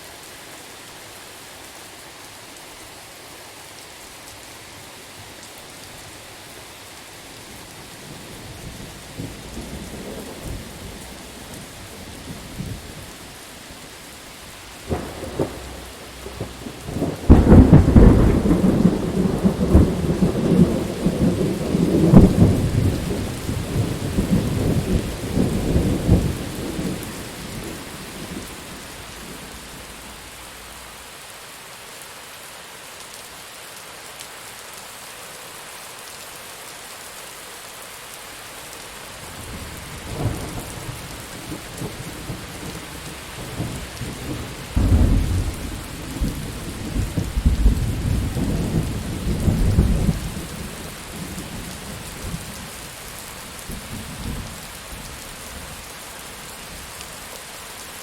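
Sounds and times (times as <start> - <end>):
heavy rain: 0.0 - 58.0
rolling thunder: 14.9 - 30.6, 39.4 - 52.5.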